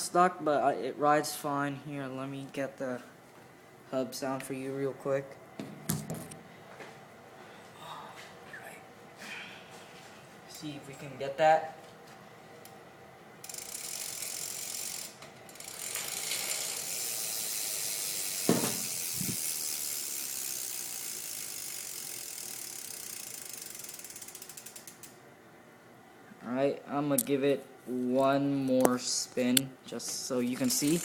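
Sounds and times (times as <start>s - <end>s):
bicycle hub ratcheting clicks: 13.4s - 25.2s, 30.5s - 31.0s.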